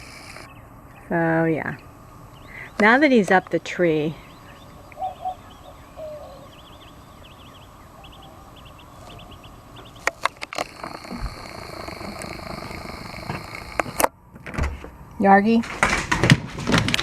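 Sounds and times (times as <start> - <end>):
faint high whine: 0.0 - 14.3
small animal chirping: 1.8 - 14.0
sharp clicks and knocks: 9.8 - 14.9.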